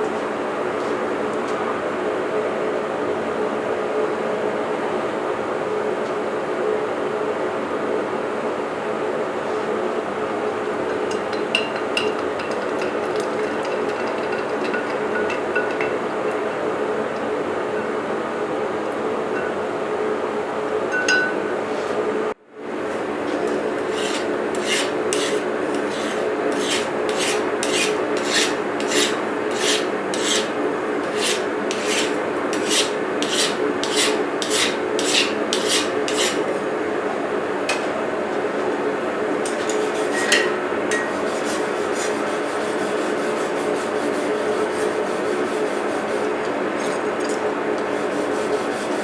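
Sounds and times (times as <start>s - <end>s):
hand file rasping on steel: 23.8s - 36.5s, 39.7s - 40.3s, 41.2s - 46.3s, 47.8s - 49.0s.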